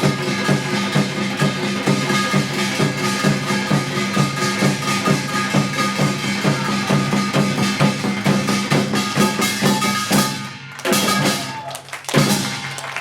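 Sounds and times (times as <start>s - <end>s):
accented percussion strokes ringing: 0.0s - 13.0s
percussion ensemble music: 0.0s - 13.0s.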